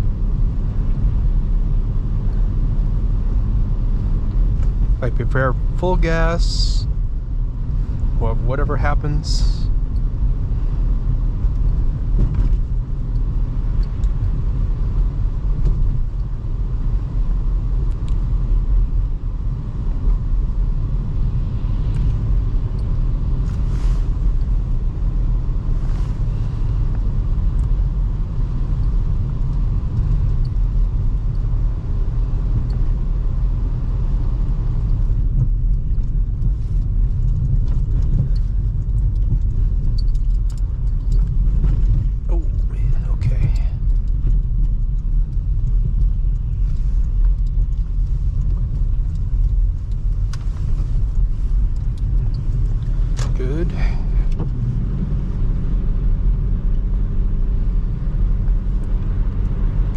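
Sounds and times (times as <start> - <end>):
car engine and tyres rumbling: 0.0 - 59.9
faint clicks: 34.8 - 42.6.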